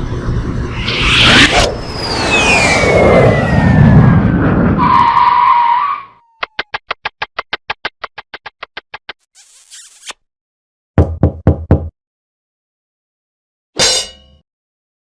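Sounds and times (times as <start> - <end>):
rushing noise: 0.0 - 5.6.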